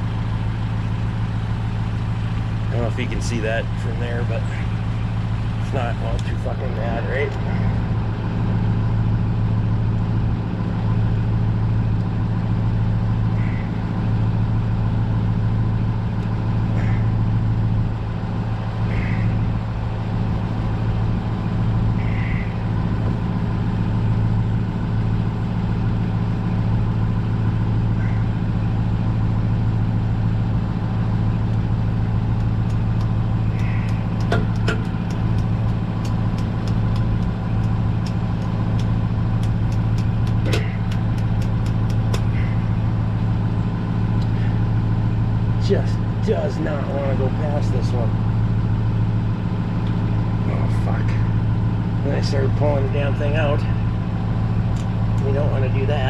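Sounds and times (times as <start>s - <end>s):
engine humming at idle: 0.0s - 56.0s
light tapping sounds: 32.3s - 42.6s.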